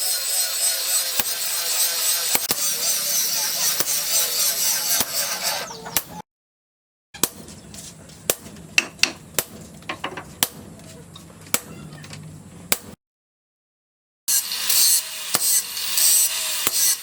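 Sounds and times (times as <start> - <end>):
low workshop background: 0.0 - 6.2, 7.2 - 13.0, 14.3 - 17.0
sharp taps and knocks: 2.3 - 2.7, 7.2 - 13.0.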